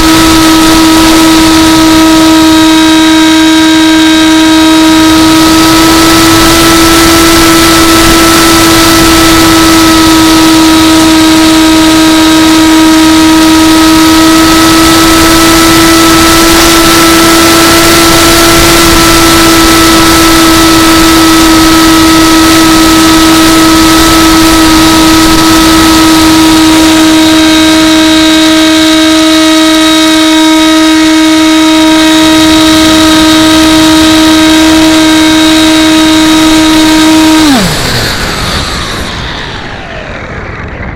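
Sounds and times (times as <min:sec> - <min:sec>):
model plane motor whine: 0:00.0 - 0:40.9
wind noise: 0:00.0 - 0:40.9.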